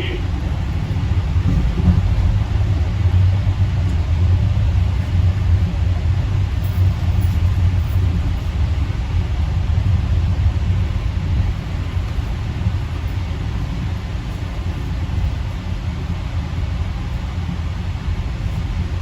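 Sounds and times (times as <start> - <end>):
train car rumbling: 0.0 - 19.0.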